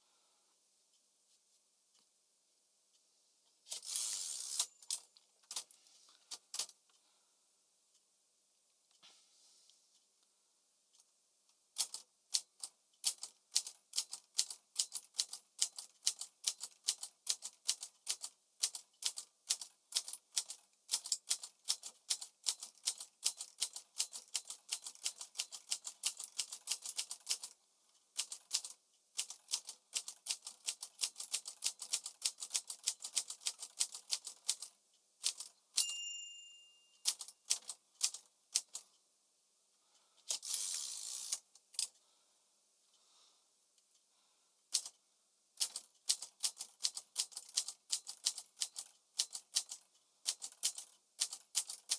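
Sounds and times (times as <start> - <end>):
typewriter bell ringing: 35.8 - 37.3.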